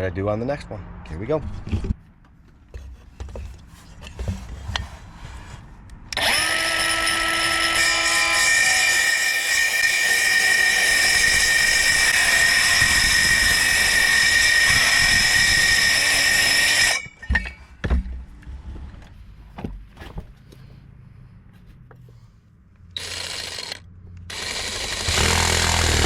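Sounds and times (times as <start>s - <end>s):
reciprocating saw cutting wood: 6.2s - 17.0s, 23.0s - 26.0s.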